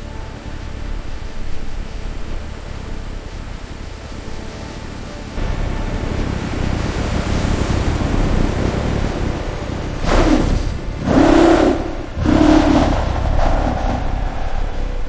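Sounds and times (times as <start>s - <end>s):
engine rumbling and revving: 6.2s - 15.0s.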